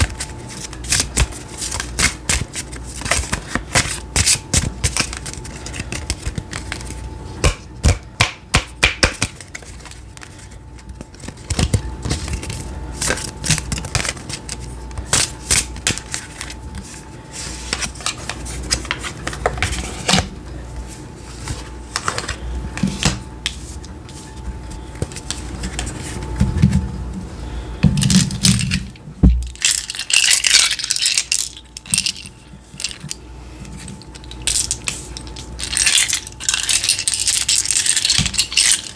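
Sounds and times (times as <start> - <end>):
cards handled on a table: 0.0 - 26.9.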